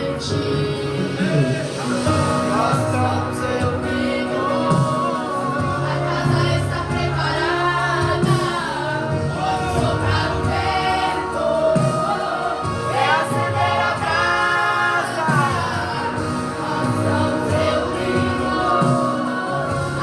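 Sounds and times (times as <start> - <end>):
youth choir singing gospel: 0.0 - 20.0.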